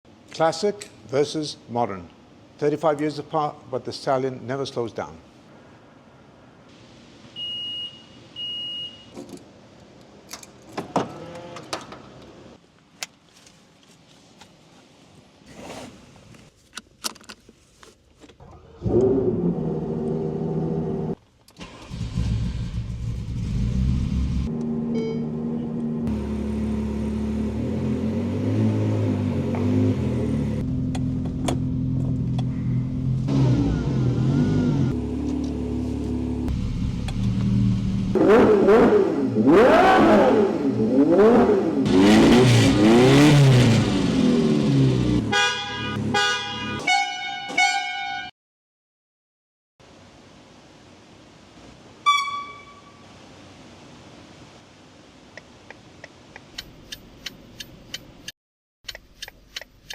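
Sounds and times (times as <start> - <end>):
car engine starting and revving: 18.4 - 45.3
short high electronic beeps: 52.1 - 53.0.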